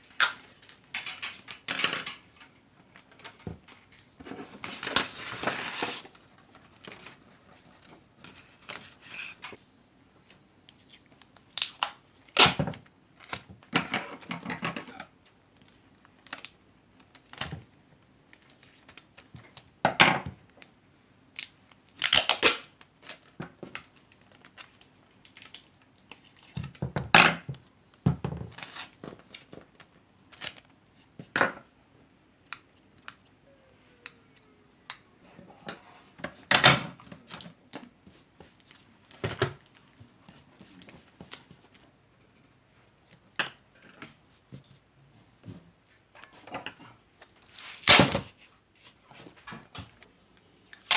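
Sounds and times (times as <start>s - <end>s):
paper and tape tearing: 47.5s - 48.2s.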